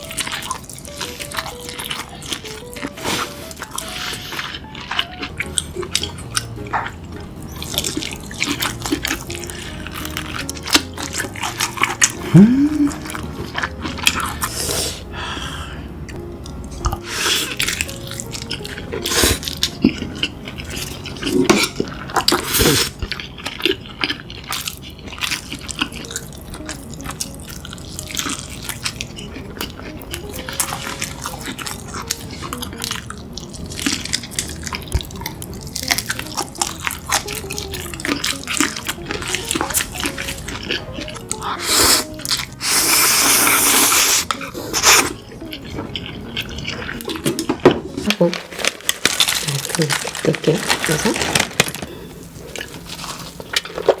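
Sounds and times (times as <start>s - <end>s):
wet chewing and slurping: 0.0s - 54.0s
smacks and crunches: 16.8s - 54.0s.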